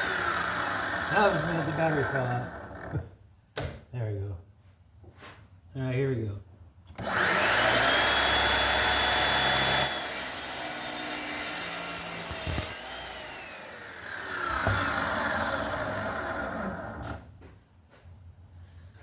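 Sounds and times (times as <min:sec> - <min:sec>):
miter saw cutting wood: 0:00.0 - 0:03.0, 0:07.0 - 0:17.2.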